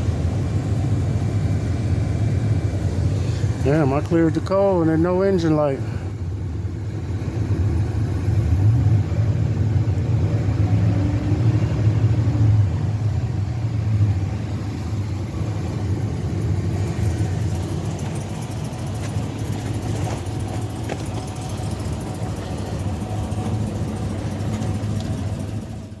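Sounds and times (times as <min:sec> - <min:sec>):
engine idling through muffler: 0:00.0 - 0:26.0.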